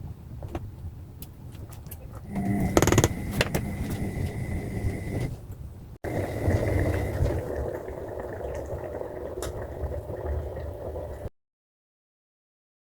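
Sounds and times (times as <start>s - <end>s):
soup bubbling in a pot: 2.3s - 5.3s, 6.0s - 11.3s.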